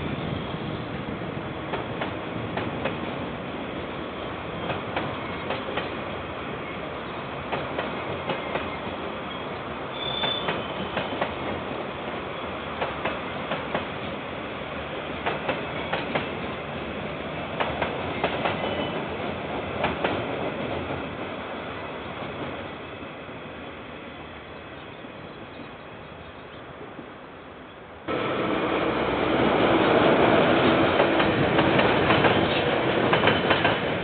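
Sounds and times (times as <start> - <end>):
train rolling past: 0.0 - 34.0
high wheel squeal: 9.3 - 10.9.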